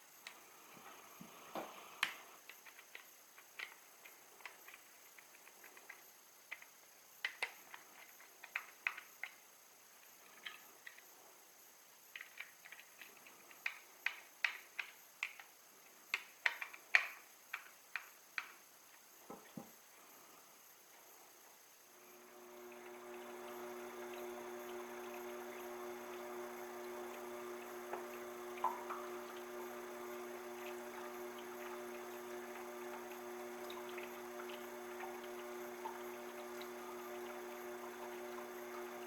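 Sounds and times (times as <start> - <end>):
faint steady hiss: 0.0 - 39.0
clicks and taps of hard parts: 1.6 - 9.4, 12.1 - 15.5, 16.1 - 18.6.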